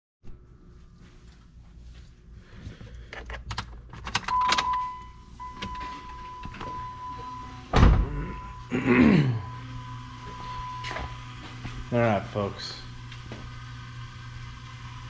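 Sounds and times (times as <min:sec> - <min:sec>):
heavy low thump: 0:07.8 - 0:08.4.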